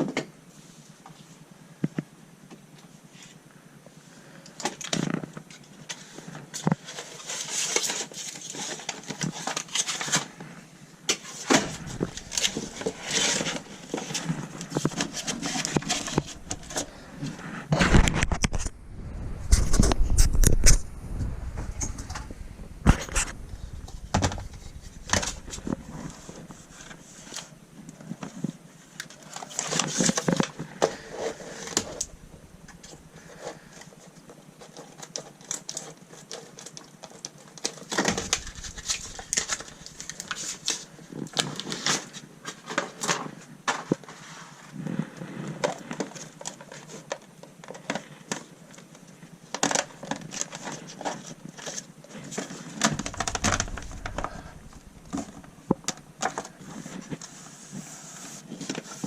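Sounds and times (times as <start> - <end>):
mats crackling and rustling: 5.0 - 59.0.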